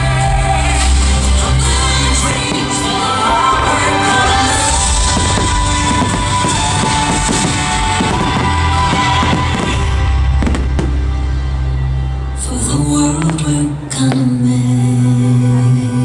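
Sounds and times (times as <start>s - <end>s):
loud music: 0.0s - 15.6s
firework bangs: 1.6s - 12.4s, 13.0s - 14.8s.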